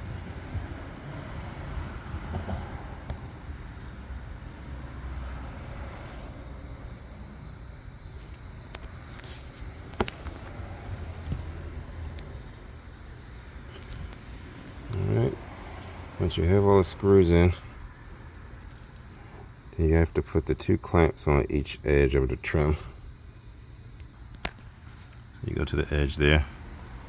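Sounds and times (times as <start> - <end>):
insects chirring: 0.0 - 27.0.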